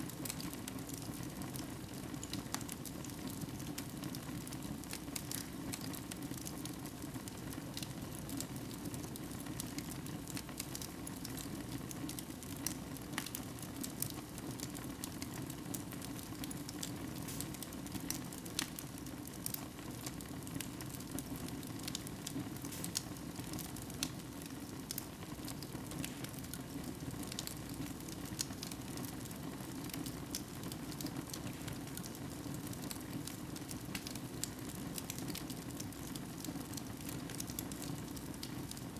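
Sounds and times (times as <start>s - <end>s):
logs crackling and popping: 0.0s - 38.9s
fire hissing: 22.6s - 24.1s.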